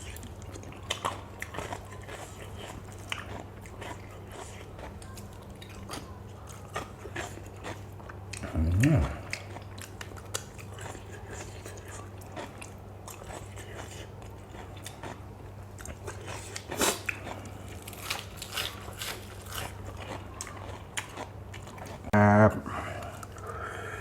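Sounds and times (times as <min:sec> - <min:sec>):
person chewing and crunching food: 0:00.0 - 0:24.0.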